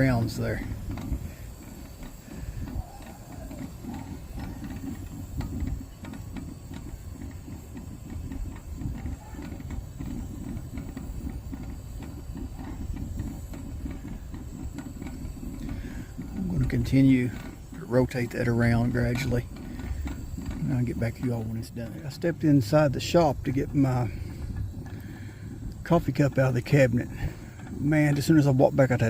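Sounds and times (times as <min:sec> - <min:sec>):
glass percolator bubbling: 0:00.0 - 0:29.0.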